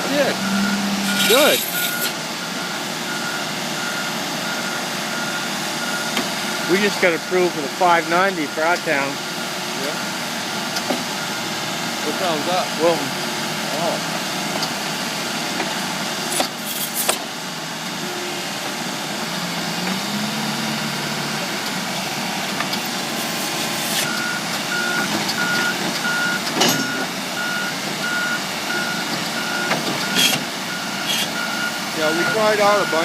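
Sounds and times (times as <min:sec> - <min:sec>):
heavy machine engine running: 0:00.0 - 0:33.0
reversing alarm beeping: 0:00.1 - 0:09.3, 0:09.9 - 0:10.3, 0:11.1 - 0:11.6, 0:23.9 - 0:33.0.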